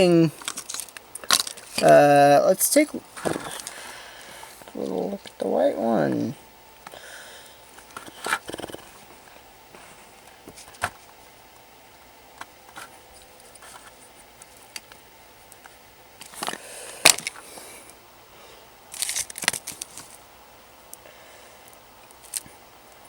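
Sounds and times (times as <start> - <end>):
packaging rustling: 0.3 - 1.9, 3.1 - 5.4, 18.9 - 20.2.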